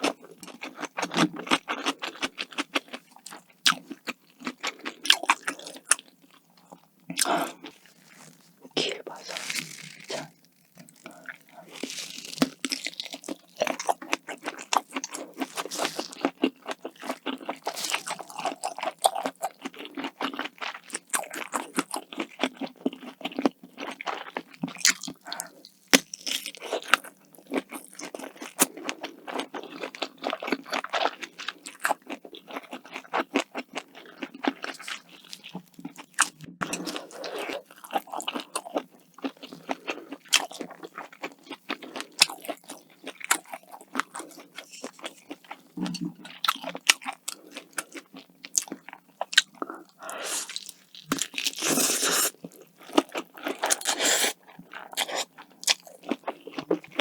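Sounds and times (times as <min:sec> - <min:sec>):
crunchy bites and chewing: 0:00.0 - 0:57.0.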